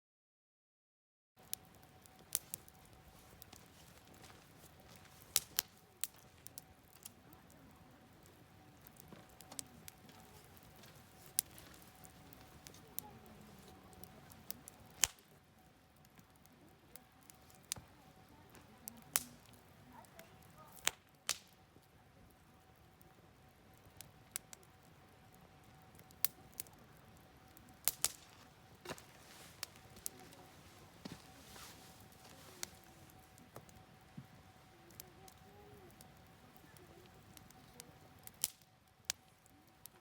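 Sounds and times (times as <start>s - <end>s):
campfire crackling: 1.4s - 40.0s
faint steady hiss: 1.4s - 40.0s
fire pops and snaps: 1.4s - 40.0s.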